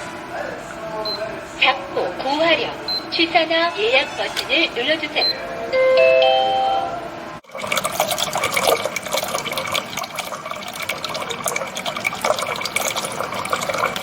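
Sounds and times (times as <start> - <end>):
water splashing into a container: 7.4 - 14.0.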